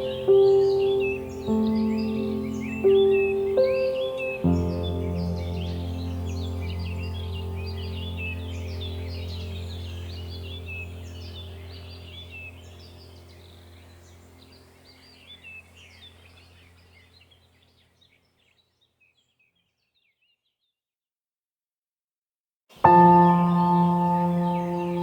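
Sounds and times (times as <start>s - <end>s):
birds chirping and calling: 0.0s - 20.4s, 23.1s - 25.0s
steady low hum: 5.0s - 17.2s.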